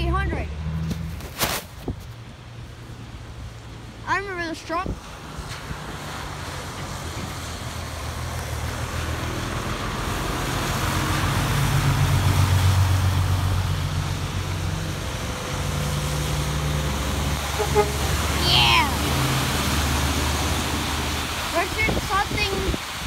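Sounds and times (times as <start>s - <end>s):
tyres hissing on wet pavement: 0.6s - 23.0s
truck diesel engine drone: 8.5s - 21.8s.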